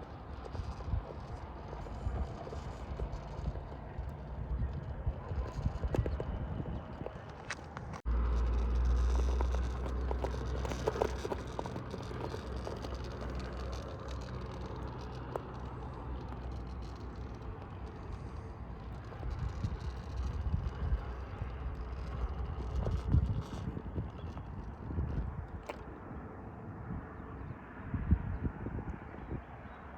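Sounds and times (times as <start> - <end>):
low motor hum: 0.0 - 26.3
tyres clicking on stone: 5.3 - 24.6.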